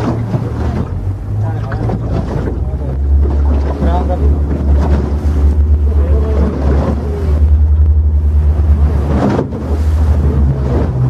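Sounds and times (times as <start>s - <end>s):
boat engine droning: 0.0s - 11.0s
sea noise: 0.0s - 11.0s
wind buffeting microphone: 0.0s - 11.0s.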